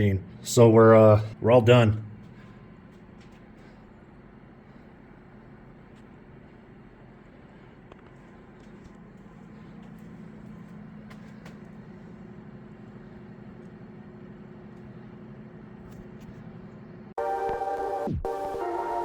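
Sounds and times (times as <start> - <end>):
low machine hum: 0.0 - 19.0
loud electronic music: 17.2 - 19.0.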